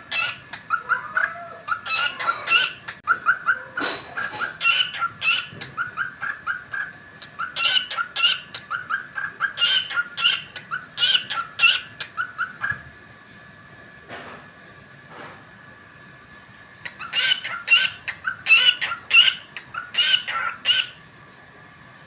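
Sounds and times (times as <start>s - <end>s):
cockatiel chirping: 0.1s - 12.8s, 16.9s - 21.0s.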